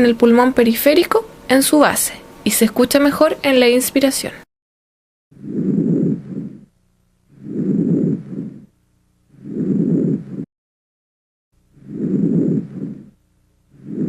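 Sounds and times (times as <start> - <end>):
breath sounds through stethoscope: 5.4 - 6.7, 7.3 - 8.7, 9.3 - 10.5, 11.7 - 14.0.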